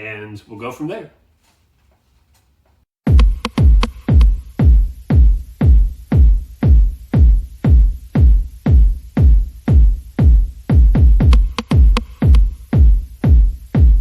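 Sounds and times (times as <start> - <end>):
deep kick drum: 3.0 - 14.0
electronic music with drum-machine beat: 3.0 - 14.0.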